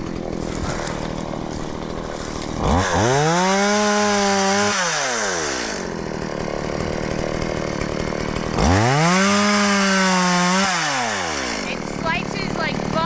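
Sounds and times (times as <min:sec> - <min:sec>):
chainsaw revving: 0:00.0 - 0:13.0.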